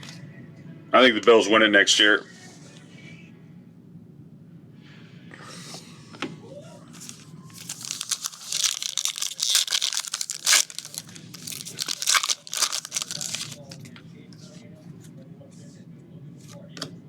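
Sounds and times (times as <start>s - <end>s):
card pack wrapper tearing and crinkling: 7.0s - 13.9s.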